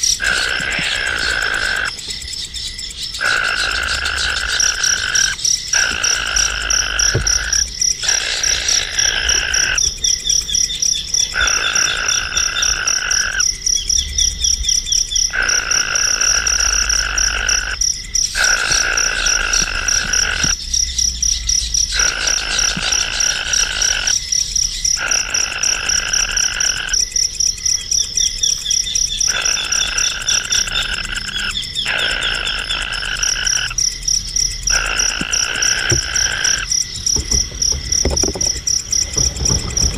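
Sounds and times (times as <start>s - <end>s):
high pulsed animal trill: 0.0s - 2.4s, 3.0s - 9.8s, 11.2s - 13.5s, 28.9s - 39.9s
lower pulsed animal call: 0.1s - 10.0s, 10.6s - 17.8s, 34.4s - 39.9s.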